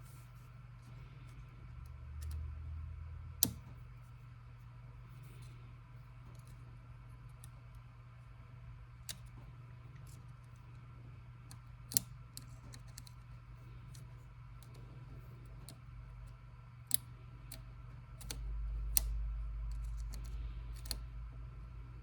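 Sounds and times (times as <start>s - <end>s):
small tool clicks and ticks: 3.4s - 3.7s, 11.5s - 13.2s, 15.5s - 21.0s.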